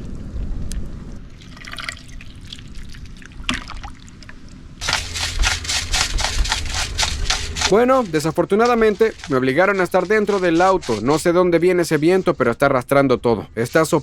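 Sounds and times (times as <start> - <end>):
liquid trickling and dripping: 1.4 - 4.5.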